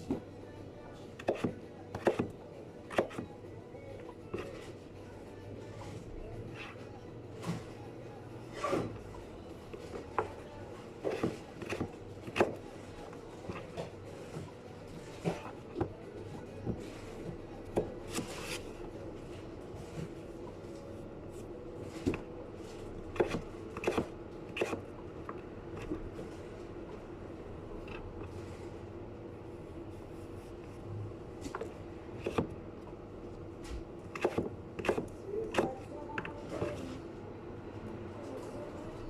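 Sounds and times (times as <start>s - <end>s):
knocks and scrapes of food preparation: 1.2s - 3.3s, 8.5s - 27.0s, 29.8s - 37.0s.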